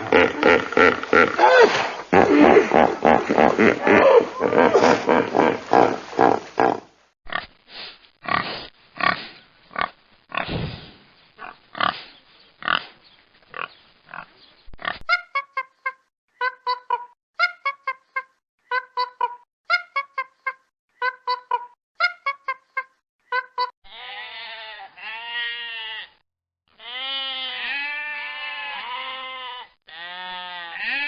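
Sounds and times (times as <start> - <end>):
pigs grunting and squealing: 0.0 - 7.5.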